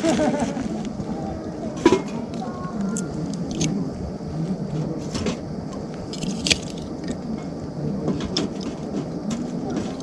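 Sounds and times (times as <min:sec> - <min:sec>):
wood fire crackling: 0:06.1 - 0:06.9
fire popping: 0:06.1 - 0:07.0.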